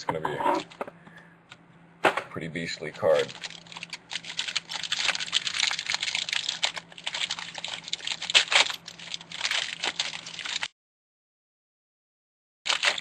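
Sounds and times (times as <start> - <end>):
packaging crinkling and tearing: 3.0 - 10.7, 12.7 - 13.0.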